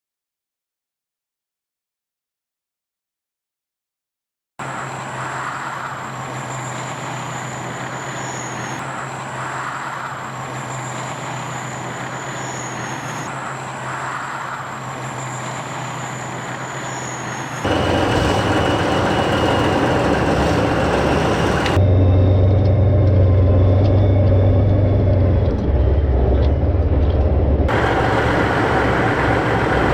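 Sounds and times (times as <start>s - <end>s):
heavy vehicle engines droning: 17.5s - 29.9s
faint high whine: 17.6s - 21.8s, 27.7s - 29.9s.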